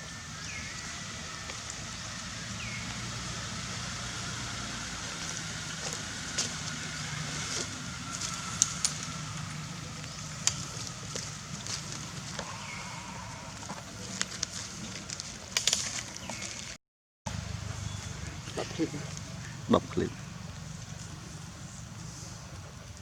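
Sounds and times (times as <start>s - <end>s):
engine humming: 0.0s - 23.0s
sharp clicks and crackles: 7.5s - 12.5s, 14.0s - 16.7s.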